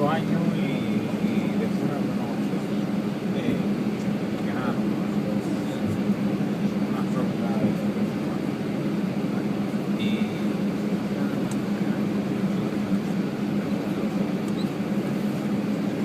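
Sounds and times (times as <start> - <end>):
airliner cabin drone: 0.0 - 16.0
brief high tone: 10.0 - 10.6.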